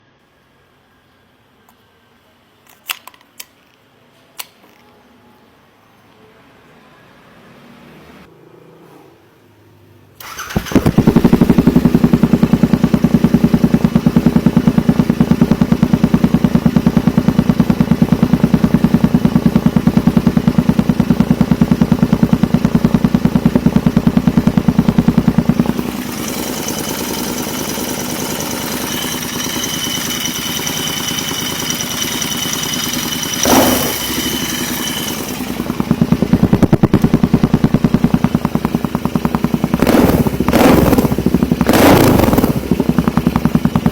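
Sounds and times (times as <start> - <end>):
motorcycle engine idling: 10.2 - 43.9.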